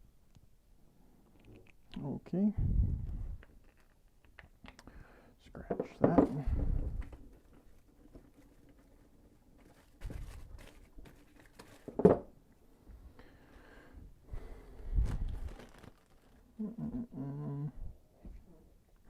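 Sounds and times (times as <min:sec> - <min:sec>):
packaging rustling: 0:03.4 - 0:04.5, 0:07.0 - 0:12.0, 0:15.0 - 0:16.6.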